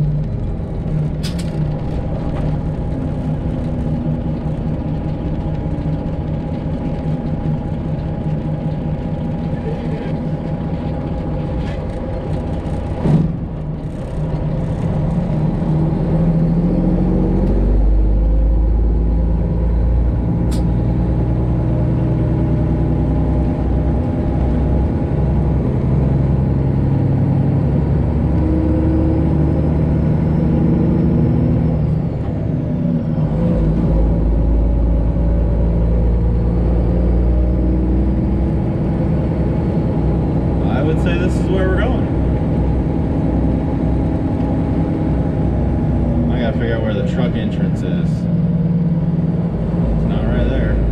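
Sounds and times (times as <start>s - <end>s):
truck engine running: 0.0s - 50.9s
sharp click: 20.5s - 20.7s.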